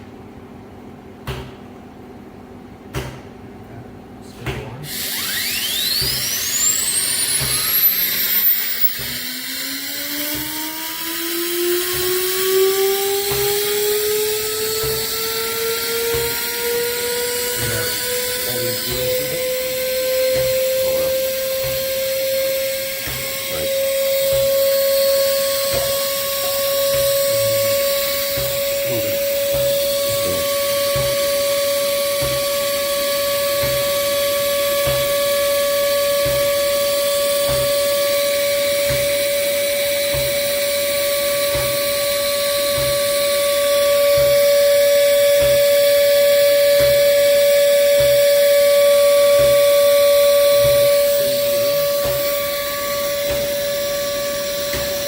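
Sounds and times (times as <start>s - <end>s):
grinding spindle whining: 4.8s - 55.0s
soft low pulse: 16.1s - 55.0s.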